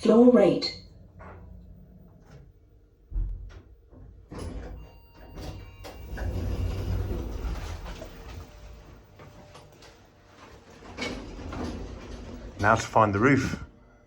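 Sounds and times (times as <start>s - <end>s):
lift doors sliding: 3.1s - 13.8s.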